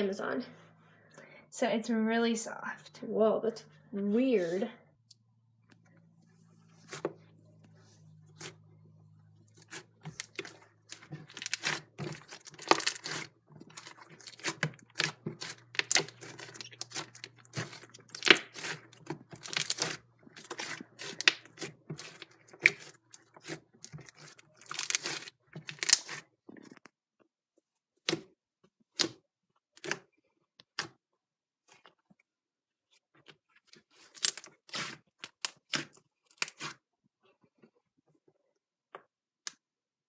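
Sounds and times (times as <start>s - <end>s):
slime crackling and snapping: 11.2s - 26.2s.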